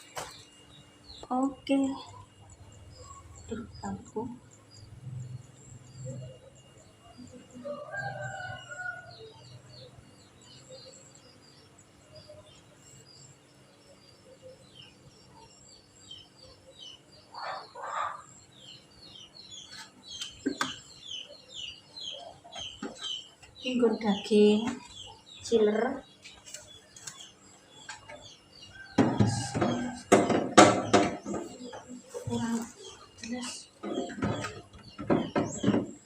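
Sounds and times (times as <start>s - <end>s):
birds chirping: 0.0s - 36.0s
chickens calling: 17.3s - 18.3s.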